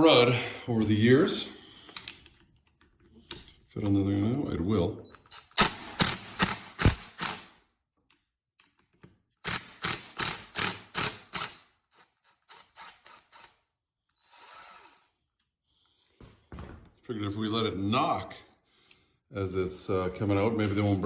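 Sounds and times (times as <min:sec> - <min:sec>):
sharp metal clicks of hand tool: 0:05.4 - 0:11.7.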